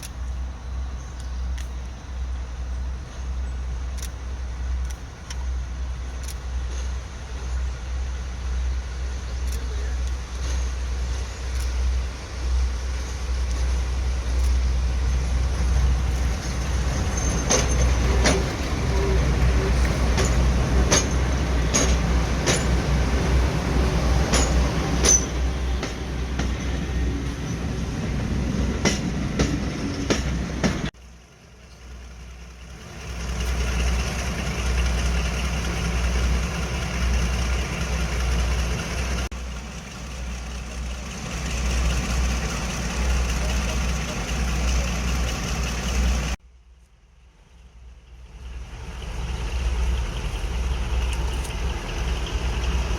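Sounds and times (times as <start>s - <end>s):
diesel locomotive and train running: 0.0s - 52.9s
sharp clicks: 3.9s - 5.5s, 6.1s - 6.6s
low engine sound: 30.9s - 52.9s.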